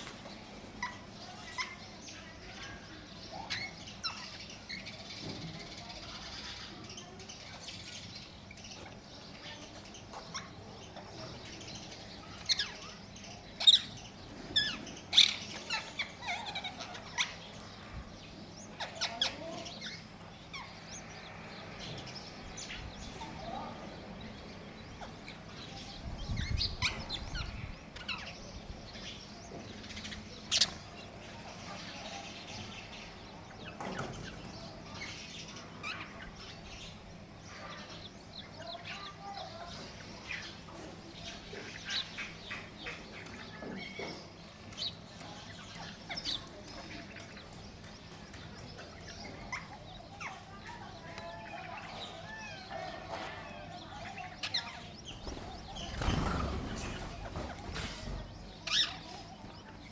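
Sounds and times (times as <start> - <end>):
parakeet chirping and calling: 10.0 - 17.8.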